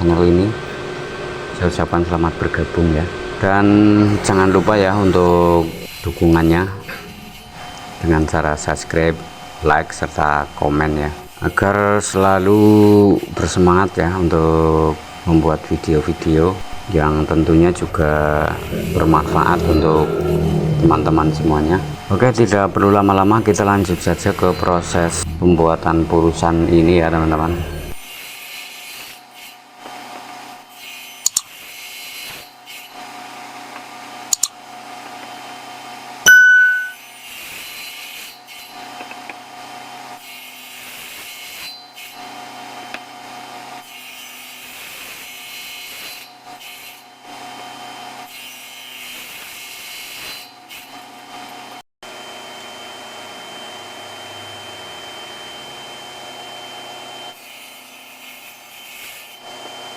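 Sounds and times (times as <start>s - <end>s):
metallic ding: 36.3s - 37.0s.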